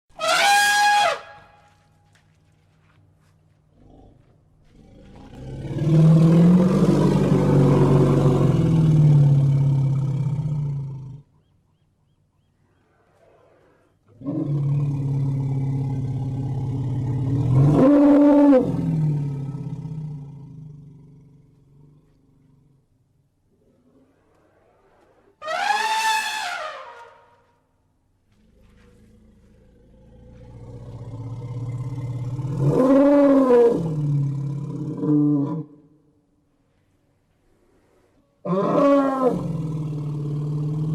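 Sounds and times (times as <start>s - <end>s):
elephant calling: 0.2s - 1.6s, 24.3s - 27.3s
elephant roaring: 3.8s - 11.2s, 12.7s - 21.6s, 23.5s - 27.2s, 28.3s - 35.7s, 37.8s - 40.9s.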